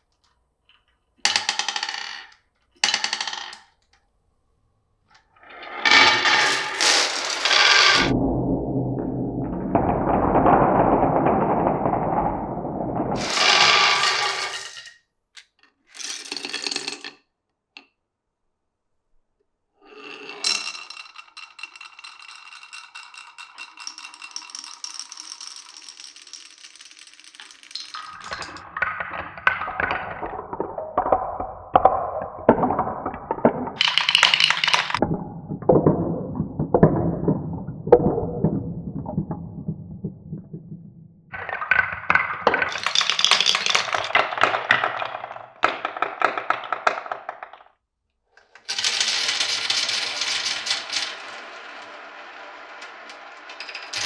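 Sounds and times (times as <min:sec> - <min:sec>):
marbles rolling on wood: 0:00.7 - 0:03.8, 0:05.5 - 0:15.0, 0:20.0 - 0:47.8, 0:48.5 - 0:54.0
marbles clacking: 0:05.6 - 0:15.0, 0:20.4 - 0:35.1, 0:41.4 - 0:47.7, 0:48.7 - 0:52.0, 0:53.1 - 0:54.0.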